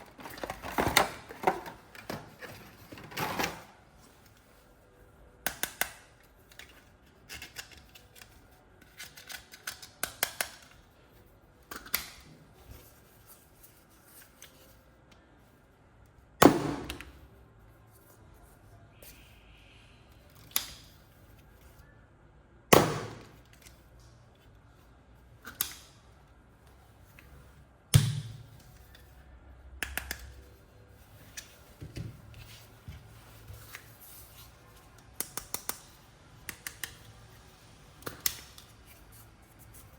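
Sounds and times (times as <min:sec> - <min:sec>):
toys and packaging clicking: 0:00.0 - 0:03.7, 0:05.5 - 0:10.9.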